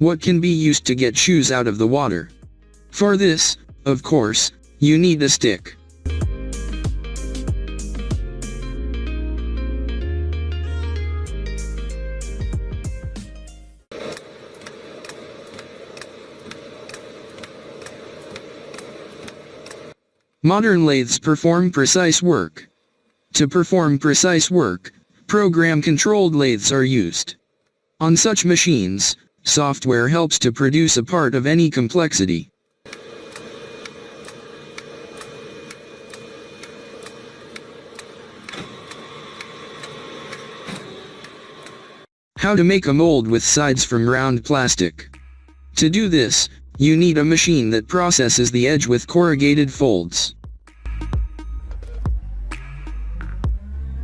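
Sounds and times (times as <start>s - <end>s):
music: 0.0s - 13.9s, 42.4s - 54.0s
machine humming: 13.9s - 20.0s, 32.9s - 42.1s
machine clicking: 14.0s - 20.0s, 32.9s - 41.9s.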